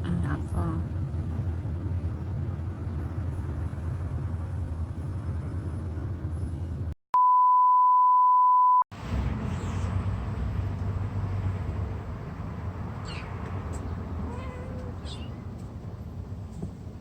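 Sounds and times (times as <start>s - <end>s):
vehicle ride rumble: 0.0s - 7.0s, 8.9s - 17.0s
high censor bleep: 7.2s - 8.8s.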